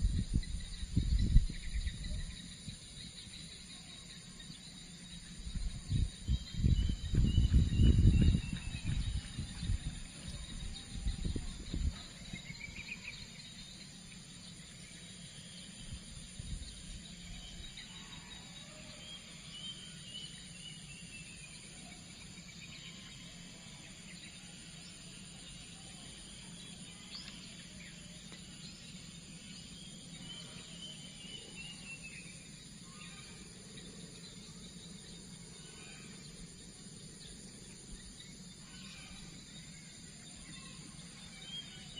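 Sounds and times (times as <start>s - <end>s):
high insect drone: 0.0s - 41.9s
low thumps and rumbles: 5.5s - 9.9s.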